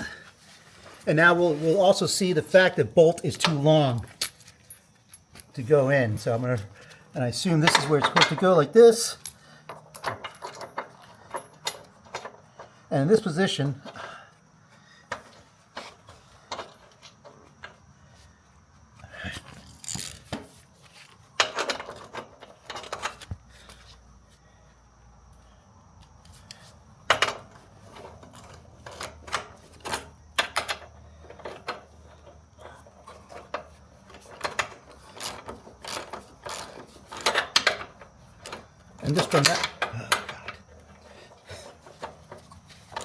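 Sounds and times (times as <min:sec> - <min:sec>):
metal parts clinking and scraping: 0:00.8 - 0:12.7, 0:19.4 - 0:23.3, 0:27.1 - 0:43.0.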